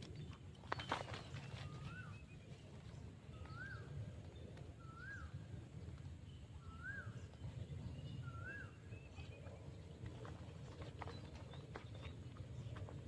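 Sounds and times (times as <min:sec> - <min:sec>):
faint low rumble: 0:00.0 - 0:13.0
bird whistling: 0:03.4 - 0:03.9, 0:04.8 - 0:05.4, 0:06.6 - 0:07.3, 0:08.0 - 0:09.2.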